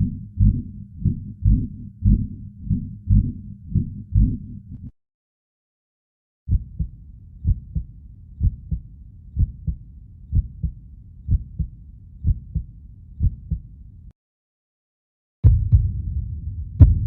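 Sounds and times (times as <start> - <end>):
heartbeat thumps: 0.0 - 4.9, 6.5 - 13.7, 15.4 - 17.0
low steady rumble: 0.0 - 4.9.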